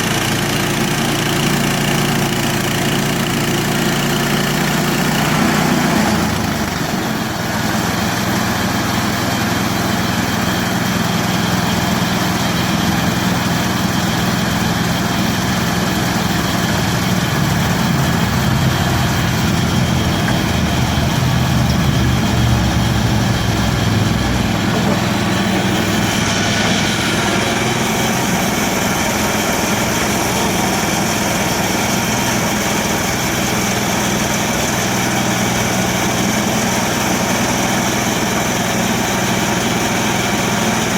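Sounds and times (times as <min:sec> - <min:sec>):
bandsaw mill engine running: 0:00.0 - 0:40.9
blade sawing through log: 0:23.6 - 0:34.2.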